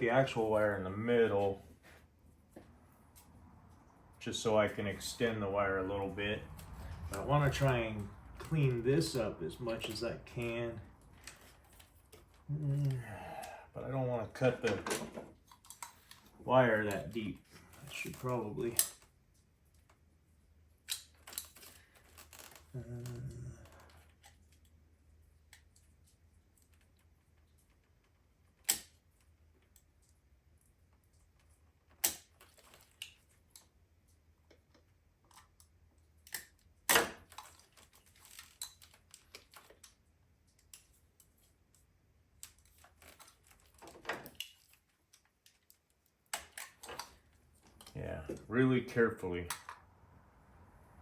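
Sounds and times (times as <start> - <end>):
brittle plastic snapping: 28.6 - 29.0, 31.9 - 33.7, 35.2 - 40.9, 42.4 - 48.0.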